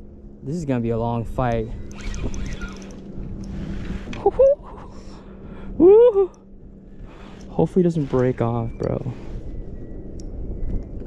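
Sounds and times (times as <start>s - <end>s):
boat engine rumble: 0.0s - 11.0s
faint high whine: 0.0s - 11.0s.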